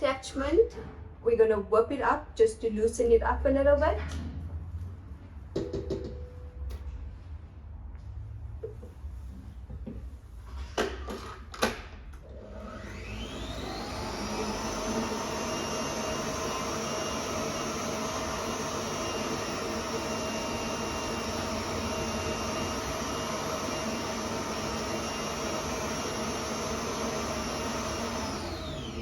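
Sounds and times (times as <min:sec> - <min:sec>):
stand mixer motor whine: 0:12.2 - 0:29.0.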